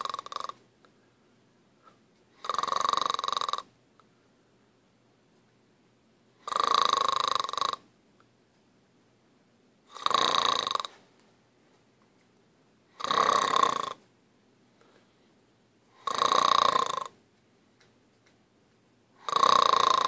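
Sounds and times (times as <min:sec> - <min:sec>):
snoring: 0:00.0 - 0:00.6, 0:02.4 - 0:03.7, 0:06.4 - 0:07.8, 0:09.9 - 0:11.0, 0:12.9 - 0:14.0, 0:15.9 - 0:17.2, 0:19.2 - 0:20.0.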